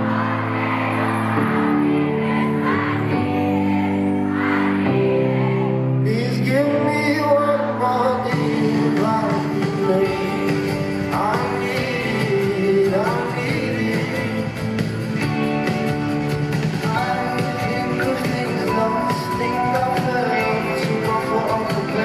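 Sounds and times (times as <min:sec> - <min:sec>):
guitar-led band playing: 0:00.0 - 0:22.0
man singing: 0:06.0 - 0:14.9, 0:16.8 - 0:22.0.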